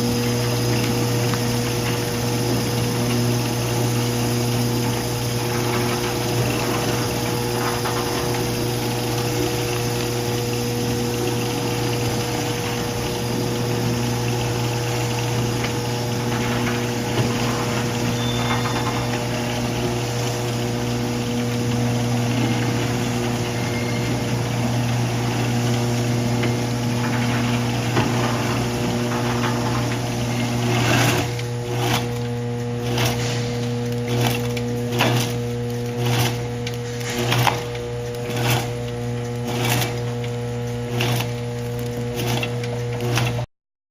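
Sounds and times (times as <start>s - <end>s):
electric drive humming: 0.0s - 43.5s
second motor tone: 3.1s - 28.6s
machine clunks: 11.9s - 32.2s.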